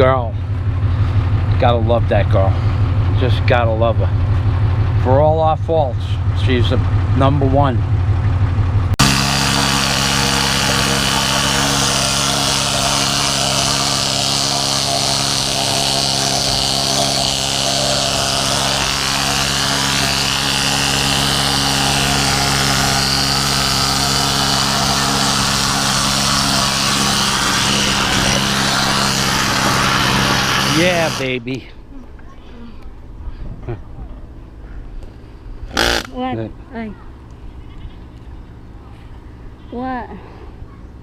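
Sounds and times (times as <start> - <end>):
engine drone: 0.0 - 41.0
needle scaler rattling: 9.0 - 31.2, 35.7 - 36.3.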